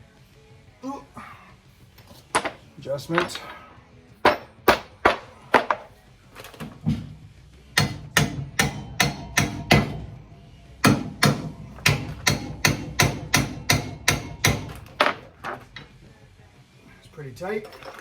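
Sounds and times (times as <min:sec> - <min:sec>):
hammer strikes on metal: 0:04.2 - 0:05.9, 0:06.9 - 0:10.2, 0:10.8 - 0:15.2.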